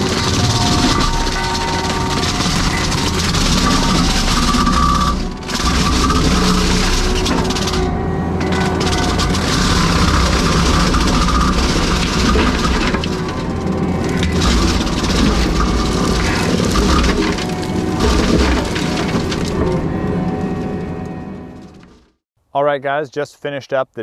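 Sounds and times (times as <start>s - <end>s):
mower engine running hard: 0.0s - 22.1s
wood crackling and splintering: 0.0s - 22.2s.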